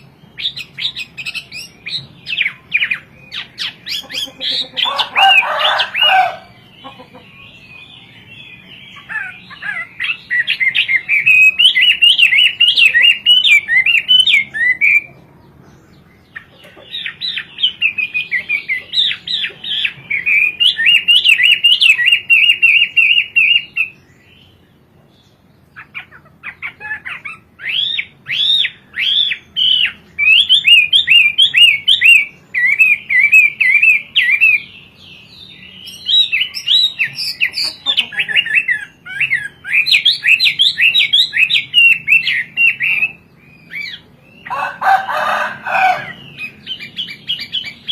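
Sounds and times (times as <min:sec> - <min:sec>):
bird singing whistled phrases: 0:09.0 - 0:15.2, 0:27.0 - 0:34.7, 0:35.6 - 0:44.0.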